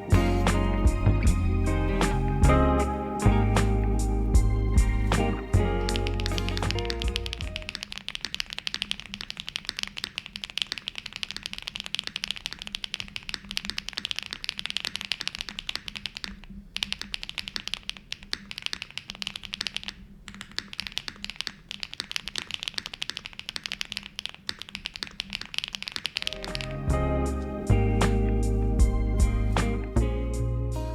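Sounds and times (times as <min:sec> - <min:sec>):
mechanical keyboard typing: 0:04.9 - 0:27.0.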